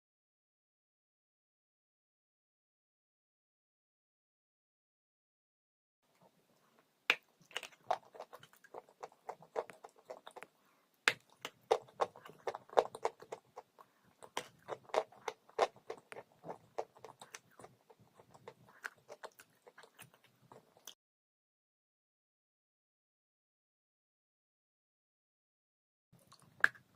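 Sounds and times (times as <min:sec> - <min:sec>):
crunchy chewing: 0:06.2 - 0:21.0
snapping bite: 0:07.1 - 0:10.5, 0:11.1 - 0:21.0.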